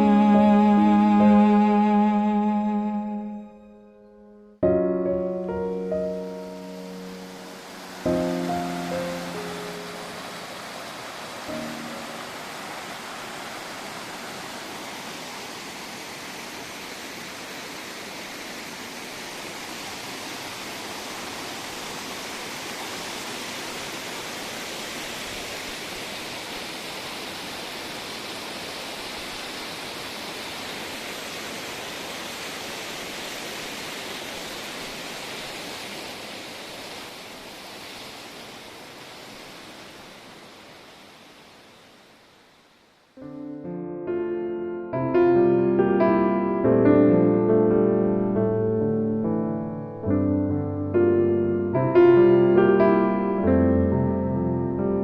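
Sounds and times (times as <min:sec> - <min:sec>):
mountain stream rushing: 0:04.7 - 0:43.2.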